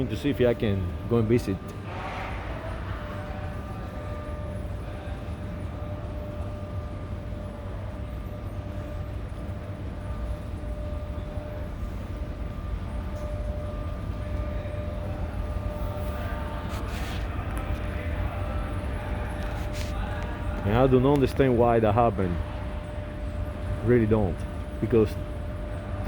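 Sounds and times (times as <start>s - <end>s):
faint hum: 0.0s - 26.0s.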